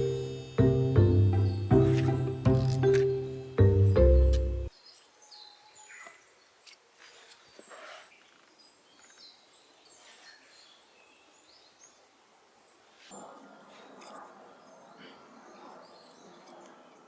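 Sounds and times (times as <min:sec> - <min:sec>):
distant bird chirps: 0:00.0 - 0:04.7.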